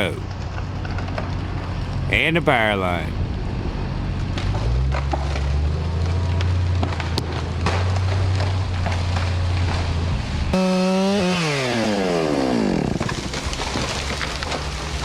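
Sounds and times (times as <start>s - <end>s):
crackling and snapping: 0.0s - 2.1s, 4.2s - 10.0s, 12.4s - 15.0s.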